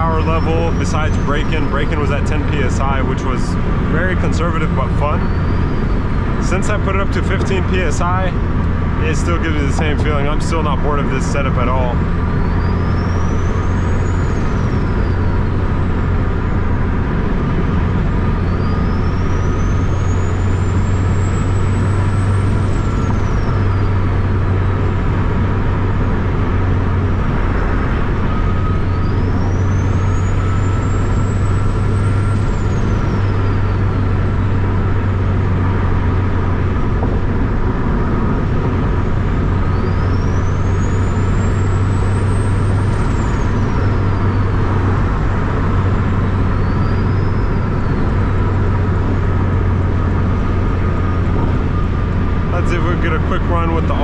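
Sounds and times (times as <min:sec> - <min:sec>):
faint high whine: 0:00.0 - 0:25.0
car engine drone: 0:00.0 - 0:54.0
road noise: 0:00.0 - 0:54.0.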